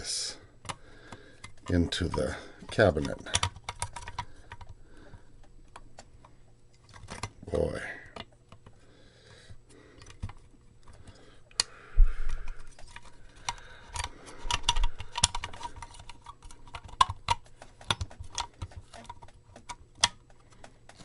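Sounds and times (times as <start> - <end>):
clicking and scraping of circuit board: 12.6 - 21.0.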